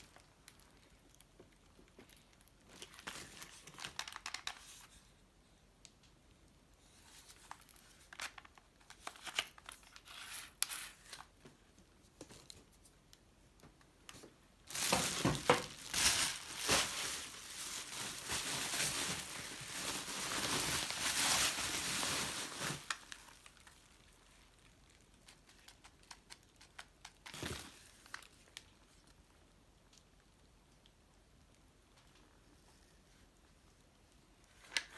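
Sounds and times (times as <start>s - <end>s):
packing material crinkling and tearing: 0.0s - 5.0s, 6.9s - 11.4s, 14.6s - 29.2s.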